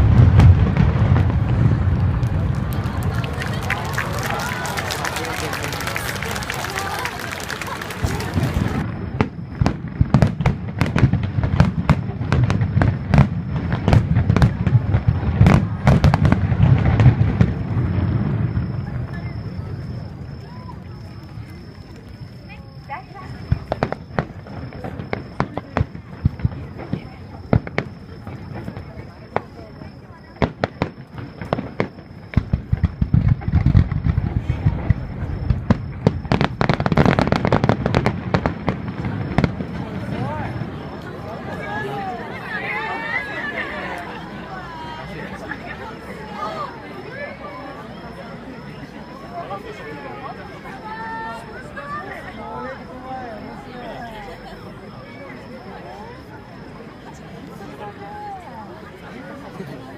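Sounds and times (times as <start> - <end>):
fireworks cracking: 0.0 - 46.2.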